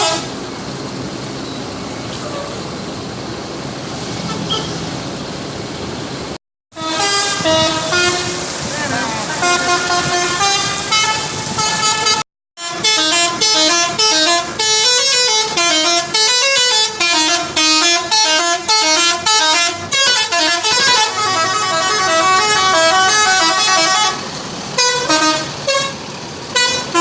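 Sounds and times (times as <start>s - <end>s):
multi-tone musical bus horn: 0.0s - 0.6s, 4.3s - 4.8s, 6.7s - 27.0s.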